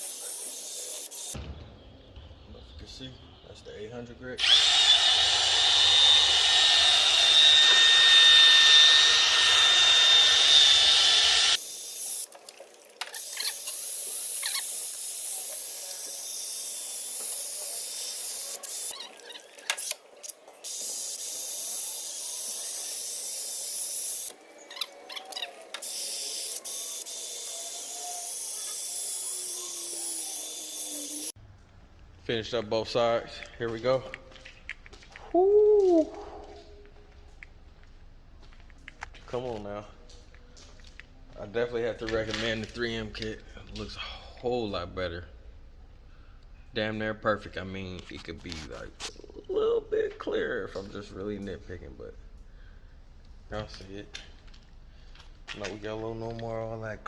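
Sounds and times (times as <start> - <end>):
drill whining with sanding pad: 4.4 - 12.2, 25.8 - 31.3.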